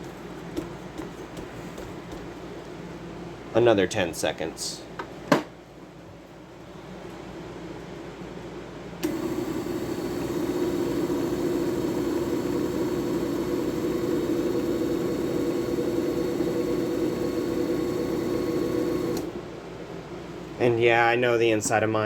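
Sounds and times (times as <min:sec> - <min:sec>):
disc buffing machine motor hum: 0:09.0 - 0:19.4.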